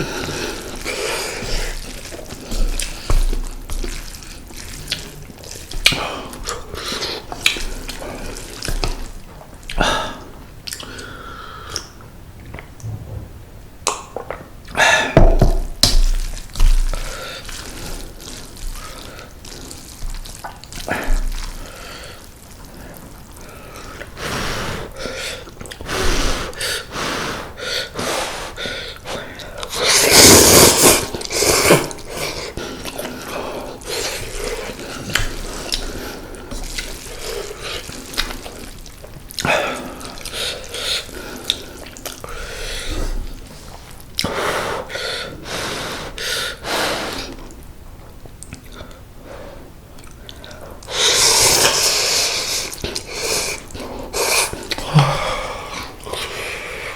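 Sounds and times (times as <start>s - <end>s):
noodle slurping: 23.8s - 44.4s, 50.2s - 56.9s
chewing: 31.1s - 42.3s, 50.0s - 55.1s.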